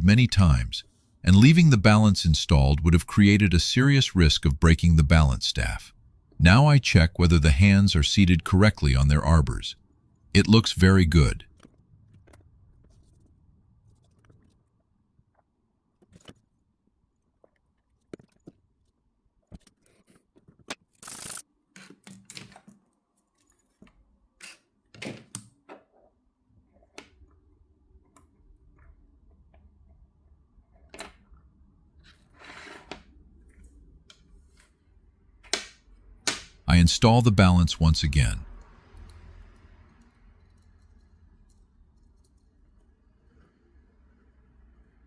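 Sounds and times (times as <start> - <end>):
faint low hum: 0.0 - 15.4
small tools clicking and scraping: 19.6 - 22.7.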